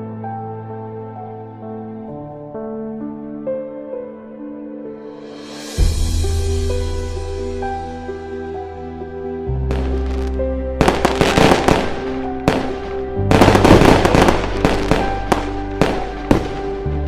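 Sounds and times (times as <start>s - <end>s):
synth music with bass line: 6.2s - 17.0s
loud crackling bursts: 9.7s - 16.7s.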